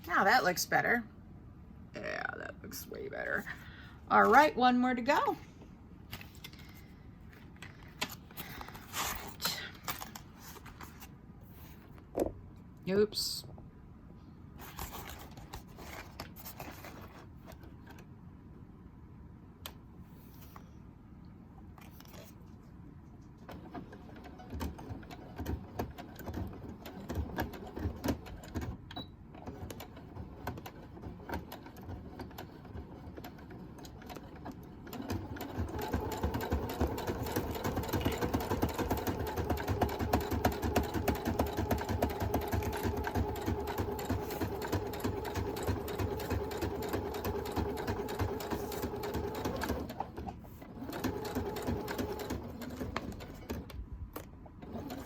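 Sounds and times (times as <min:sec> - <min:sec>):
sewing machine stitching: 0:23.5 - 0:53.8, 0:54.6 - 0:55.0.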